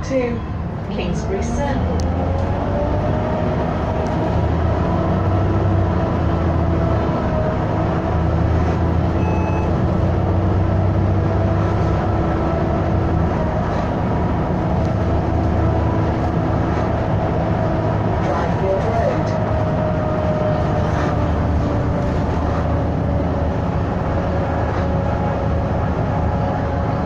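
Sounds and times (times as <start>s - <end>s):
bus engine drone: 0.0s - 27.0s
engine cooling fan whine: 0.0s - 27.0s.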